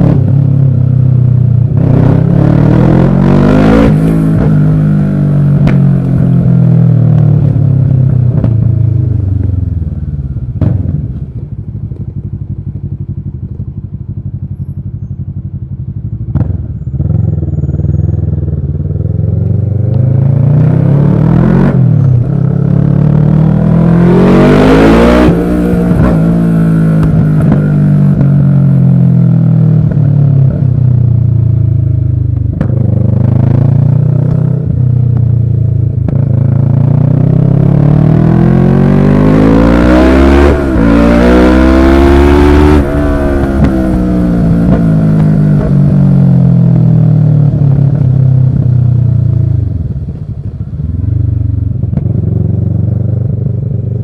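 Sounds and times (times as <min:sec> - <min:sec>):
motorcycle engine revving: 0:00.0 - 0:54.0
wind noise rushing: 0:40.5 - 0:46.7.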